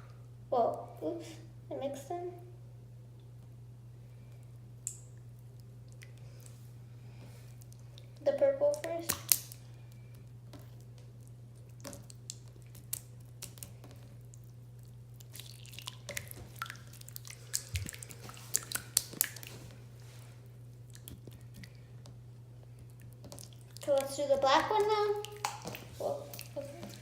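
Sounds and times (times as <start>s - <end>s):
steady low hum: 0.0s - 27.0s
wet slime squishes: 4.2s - 27.0s.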